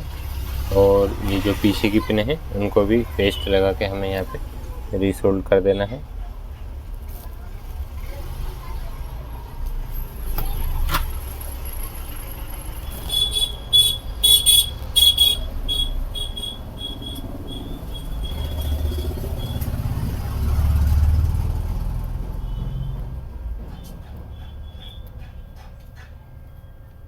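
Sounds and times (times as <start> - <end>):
road traffic rumble: 0.0 - 27.0
short high-pitched beeps: 13.0 - 19.6.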